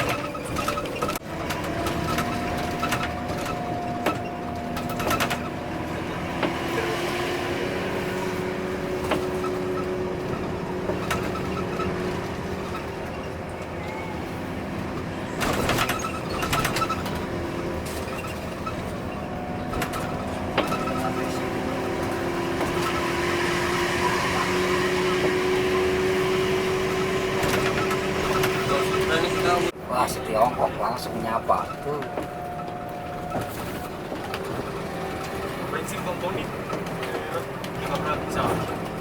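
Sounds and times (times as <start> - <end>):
sharp knocks and rattles: 0.0 - 6.8, 8.4 - 23.5
bus diesel engine running: 0.0 - 39.0.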